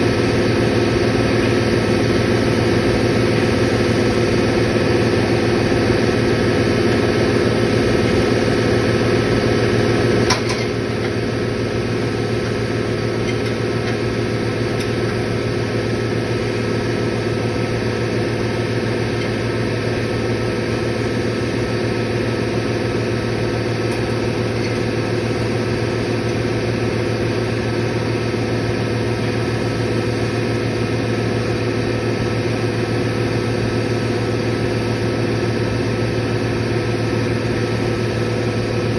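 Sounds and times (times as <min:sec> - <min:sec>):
compressor humming: 0:00.0 - 0:38.9.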